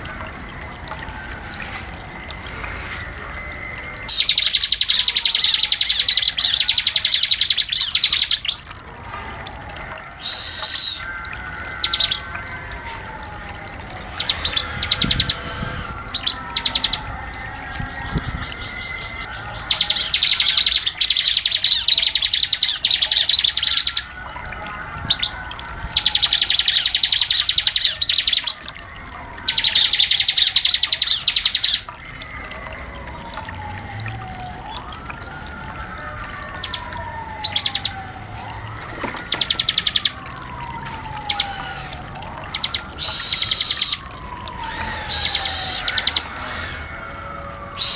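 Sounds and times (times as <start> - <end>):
bird song with rapid high trills: 3.1 - 8.7, 10.2 - 12.5, 14.2 - 24.2, 25.1 - 28.7, 29.4 - 31.9, 37.4 - 38.0, 39.2 - 40.4, 42.4 - 46.9
whistle sliding down in pitch: 43.0 - 44.0.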